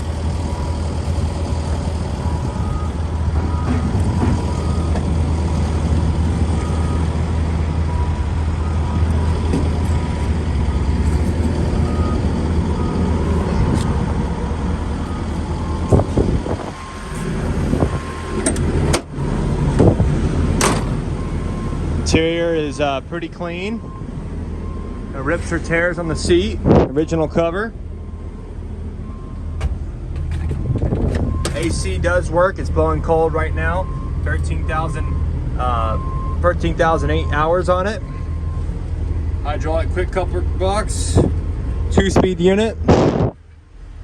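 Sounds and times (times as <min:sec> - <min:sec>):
excavator diesel engine idling: 0:00.0 - 0:30.7.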